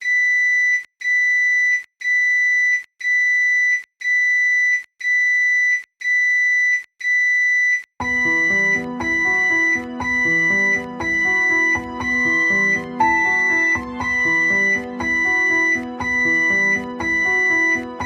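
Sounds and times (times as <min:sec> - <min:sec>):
microwave oven beeping: 0:00.0 - 0:18.0
music: 0:08.0 - 0:18.0.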